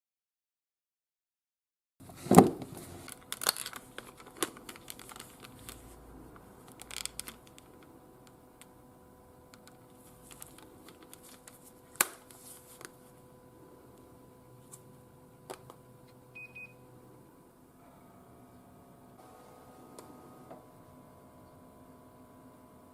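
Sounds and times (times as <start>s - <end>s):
faint steady hum: 2.0s - 22.9s
crinkly rustling: 2.7s - 6.0s, 6.6s - 7.9s, 9.6s - 13.2s
plastic parts clicking: 3.1s - 5.8s, 6.7s - 8.4s.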